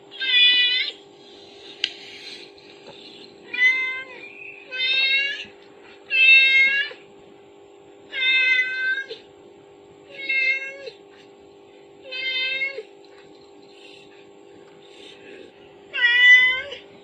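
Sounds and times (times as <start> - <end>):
faint hum: 0.0 - 17.0
cat meowing: 3.5 - 5.5, 6.1 - 7.0, 8.1 - 9.2, 10.1 - 11.0, 12.0 - 12.9, 15.9 - 16.8.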